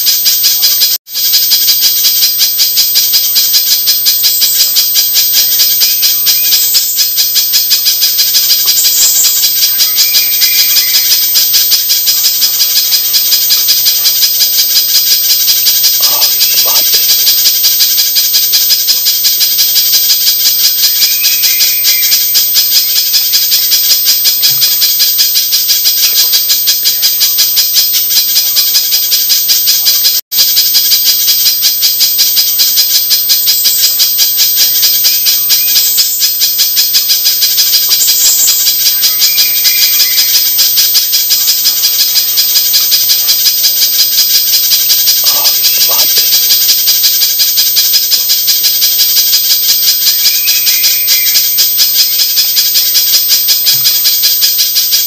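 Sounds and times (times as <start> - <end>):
bird calling with sharp chips: 5.8 - 14.2, 15.0 - 17.2, 20.9 - 22.4, 37.6 - 43.0, 45.0 - 46.3, 50.1 - 52.2.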